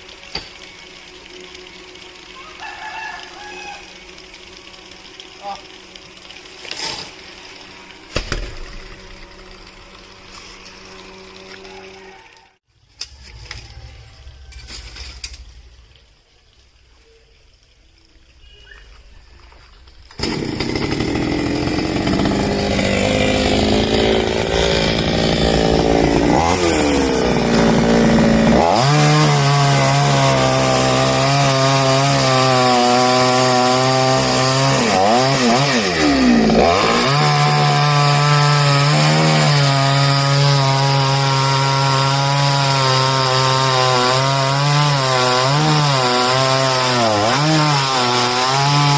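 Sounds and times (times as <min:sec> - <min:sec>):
chainsaw cutting wood: 0:06.6 - 0:12.2, 0:20.1 - 0:48.9.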